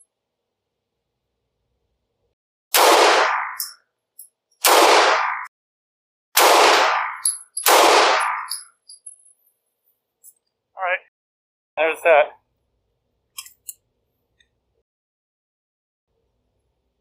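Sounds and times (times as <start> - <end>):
pistol shots with ringing tail: 2.7 - 3.8, 4.6 - 5.5, 6.4 - 8.7.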